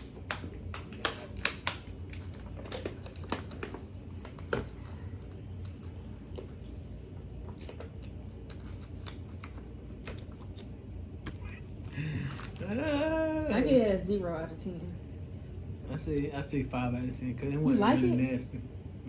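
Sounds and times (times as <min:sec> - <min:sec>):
crunching and chewing cracker: 0:00.0 - 0:12.8.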